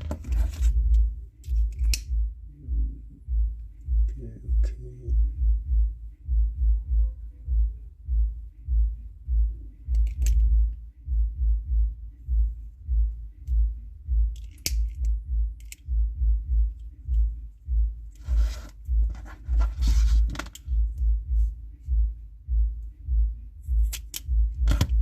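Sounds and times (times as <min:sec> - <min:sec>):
cord rustling: 0:00.0 - 0:01.9, 0:18.1 - 0:20.8
background music with low beat: 0:00.0 - 0:25.0.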